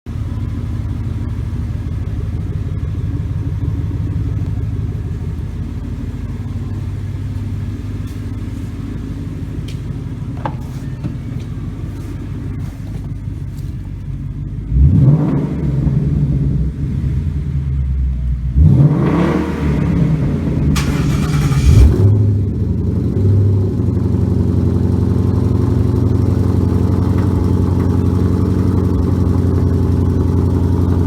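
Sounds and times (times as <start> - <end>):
car engine idling: 0.0 - 31.0
engine revving: 14.6 - 31.0.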